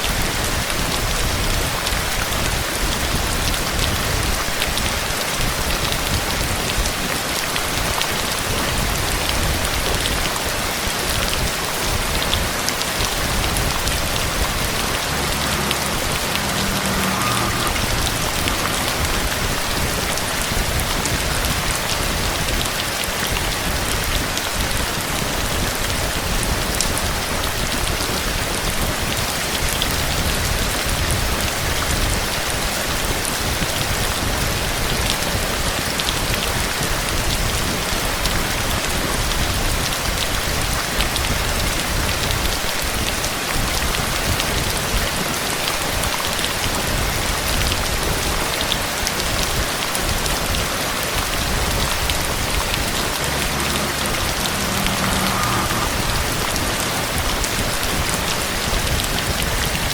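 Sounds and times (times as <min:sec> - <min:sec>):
heavy rain falling: 0:00.0 - 0:59.9
low rumble: 0:12.0 - 0:24.2, 0:51.0 - 0:59.9.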